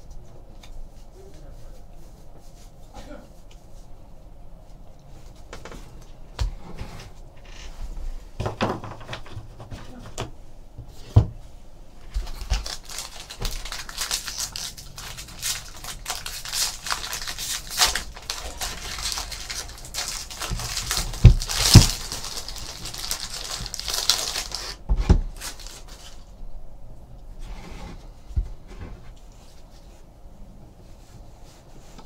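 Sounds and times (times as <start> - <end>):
foil wrappers crinkling and tearing: 12.1 - 26.3.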